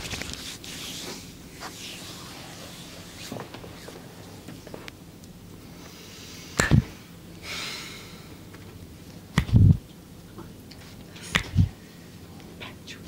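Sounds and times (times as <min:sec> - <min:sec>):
breathy hiss: 0:05.6 - 0:08.5
massage strikes on body: 0:06.6 - 0:06.9, 0:09.3 - 0:09.8, 0:11.3 - 0:11.7.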